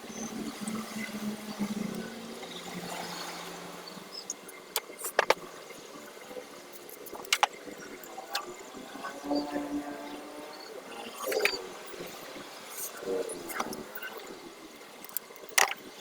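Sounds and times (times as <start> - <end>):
sharp clicks and knocks: 4.7 - 5.5, 6.8 - 7.6, 15.0 - 15.9.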